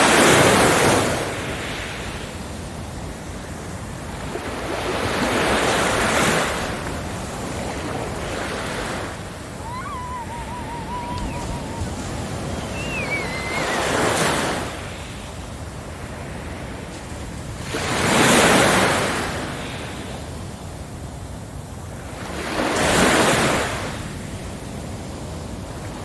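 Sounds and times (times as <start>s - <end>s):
steady surf hiss: 0.0s - 17.5s
sea waves crashing on beach: 0.0s - 26.0s.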